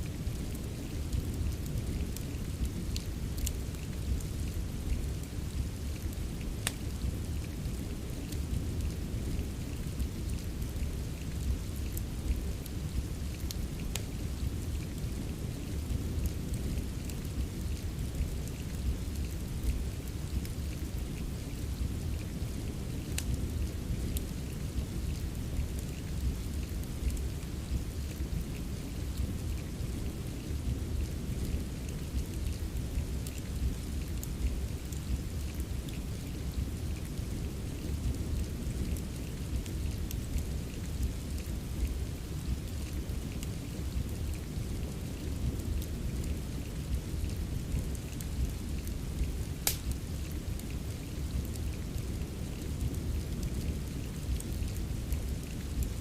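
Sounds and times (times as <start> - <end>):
steady rain hissing: 0.0 - 56.0
wood fire crackling: 0.0 - 56.0
sharp fire pop: 49.6 - 50.0.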